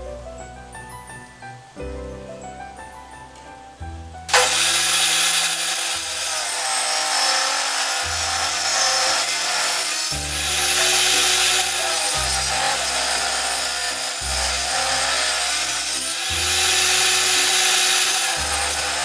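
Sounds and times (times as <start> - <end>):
power saw cutting wood: 4.3 - 19.0.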